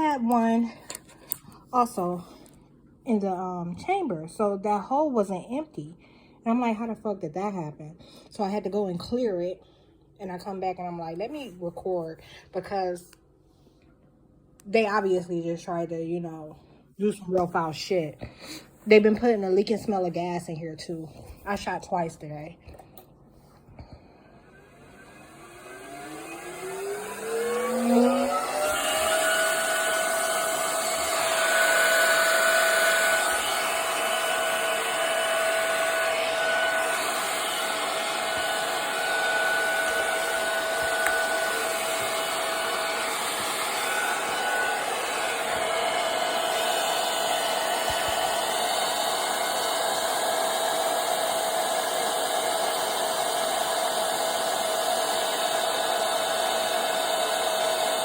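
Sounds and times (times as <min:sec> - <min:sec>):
electric air compressor running: 0:24.4 - 0:58.0.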